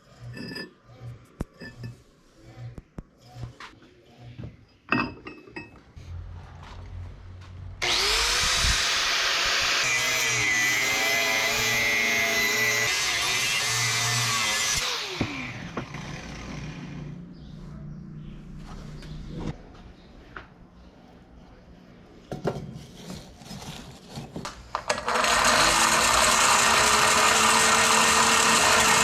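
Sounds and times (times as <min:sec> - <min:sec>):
electric power tool running: 0:07.8 - 0:17.1, 0:24.8 - 0:29.0.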